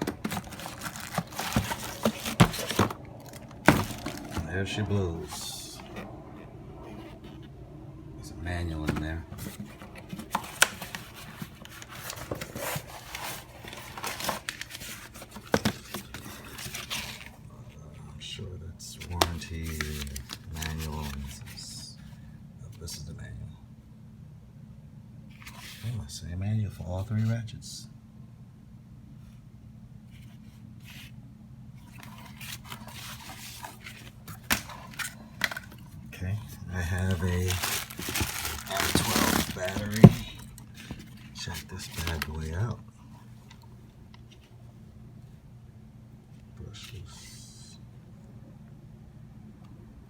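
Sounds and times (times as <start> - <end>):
packaging rustling and crinkling: 0.0 - 7.4, 8.8 - 17.5, 19.0 - 21.6, 31.8 - 43.6.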